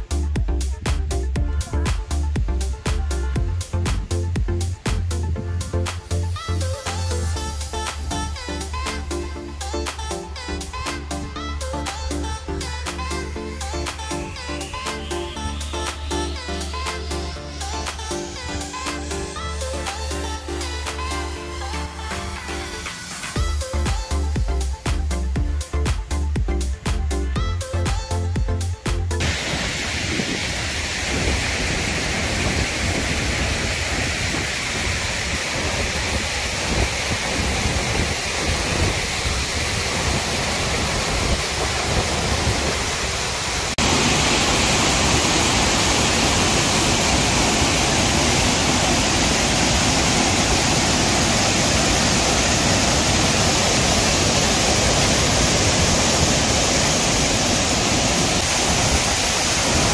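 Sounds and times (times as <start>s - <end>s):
waterfall pouring: 29.2s - 59.9s.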